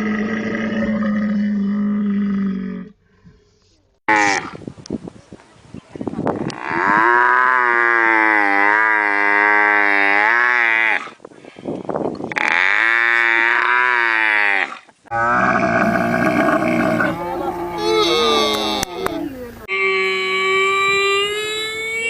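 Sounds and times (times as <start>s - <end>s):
camel bellowing: 12.4s - 19.4s.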